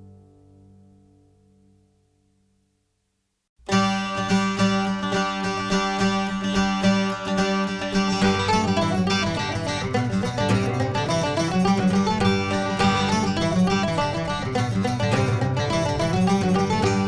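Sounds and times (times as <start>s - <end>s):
plucked string background music: 3.6s - 17.0s.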